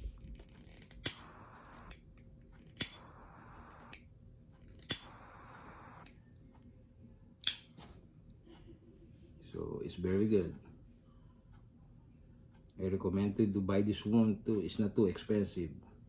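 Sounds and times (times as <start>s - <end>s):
lighter ignition click: 0.7s - 2.0s, 2.6s - 6.2s, 7.4s - 7.7s
jet flame hissing: 0.8s - 2.0s, 2.6s - 4.0s, 4.6s - 6.1s.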